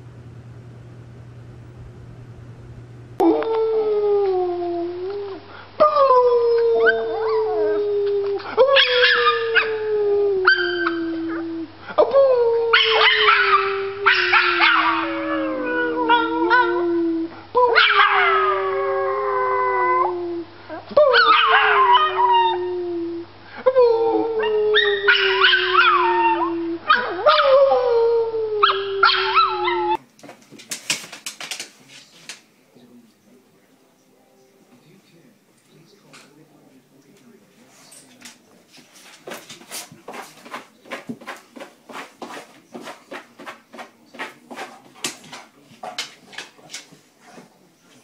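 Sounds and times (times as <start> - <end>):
dog howling: 3.2 - 30.0
dog yips and whines: 8.6 - 9.7, 10.4 - 11.4.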